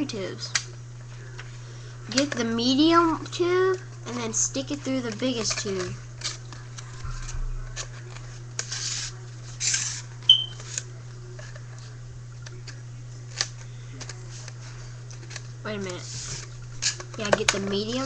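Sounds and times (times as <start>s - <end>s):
low electrical hum: 0.0s - 18.0s
paper tubes rustling and scraping: 1.1s - 18.0s
high-pitched chirp: 10.3s - 10.6s.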